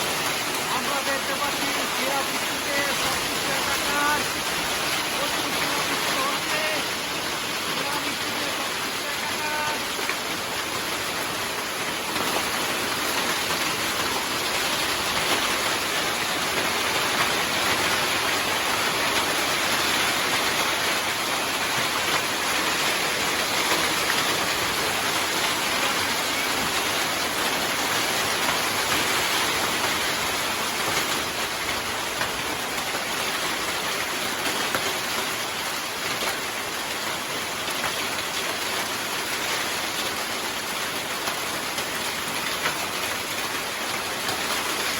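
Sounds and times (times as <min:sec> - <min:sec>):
hail and heavy rain pelting: 0:00.0 - 0:44.9.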